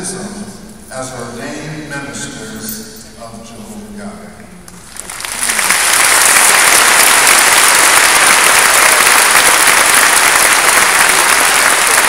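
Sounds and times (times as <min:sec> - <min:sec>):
audience applauding: 0:04.8 - 0:12.0.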